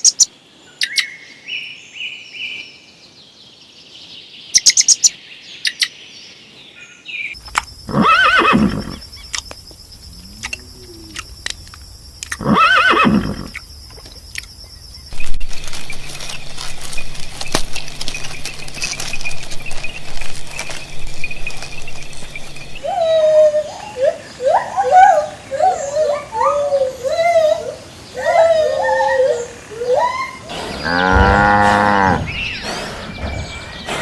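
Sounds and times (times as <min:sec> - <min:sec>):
horse neighing: 0:07.9 - 0:09.0, 0:12.3 - 0:13.6, 0:30.5 - 0:32.4.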